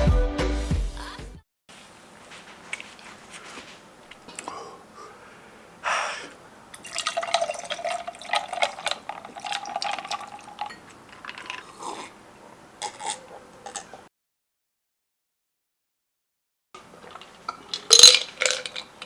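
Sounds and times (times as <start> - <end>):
steady watery tone: 3.9 - 13.6
wet eating and drinking: 4.1 - 5.0, 6.2 - 14.1, 16.8 - 19.0.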